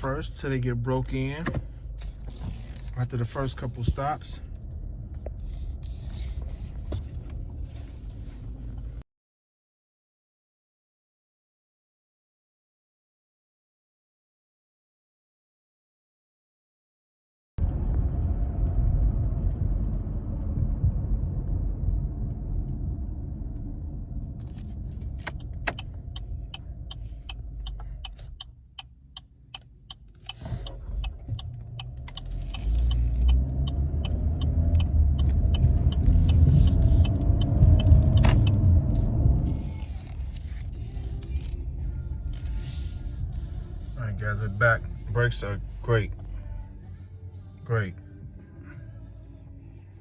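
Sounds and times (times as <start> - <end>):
car road and engine rumble: 0.0 - 9.0, 17.6 - 50.0
regular clicking: 25.2 - 38.6.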